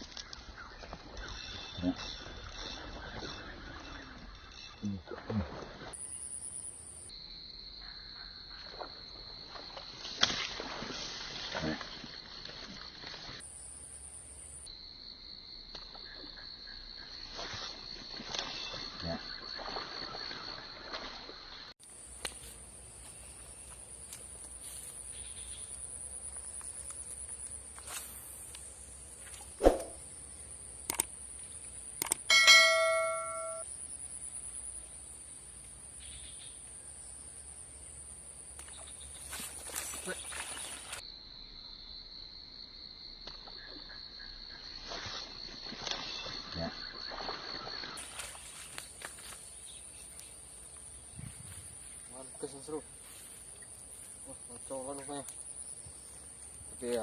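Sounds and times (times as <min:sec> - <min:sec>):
insects buzzing: 0:05.8 - 0:57.0
sharp click: 0:30.9 - 0:31.1, 0:32.0 - 0:32.3.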